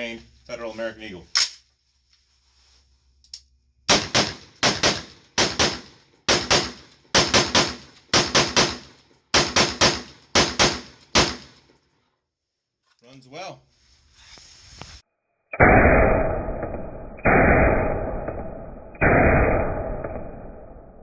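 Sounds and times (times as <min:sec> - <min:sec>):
rifle gunshots: 0:03.9 - 0:11.7.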